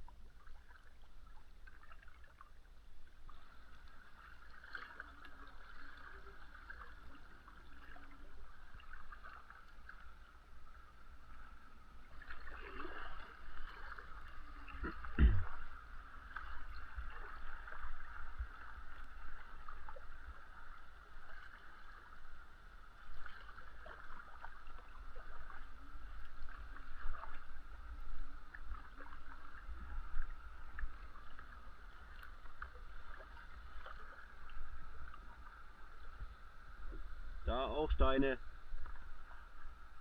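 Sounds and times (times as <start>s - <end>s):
paddle splashing water: 0.0s - 40.0s
rushing water: 0.0s - 40.0s.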